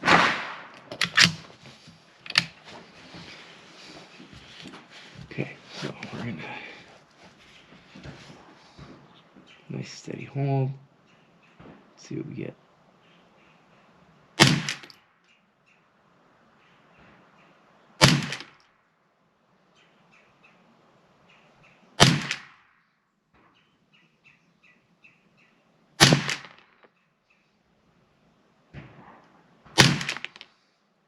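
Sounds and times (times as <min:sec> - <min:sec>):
rifle shots: 0:00.0 - 0:01.5, 0:14.4 - 0:15.0, 0:18.0 - 0:18.6, 0:22.0 - 0:22.6, 0:26.0 - 0:26.7, 0:28.9 - 0:30.4.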